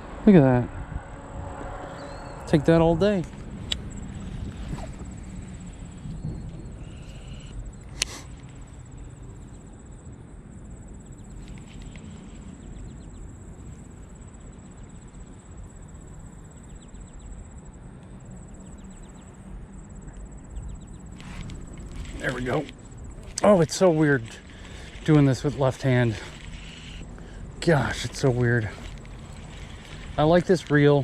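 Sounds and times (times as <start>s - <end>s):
wind rumble on microphone: 0.0s - 31.0s
high-pitched insect drone: 1.4s - 31.0s
faint fast ticking: 20.8s - 31.0s.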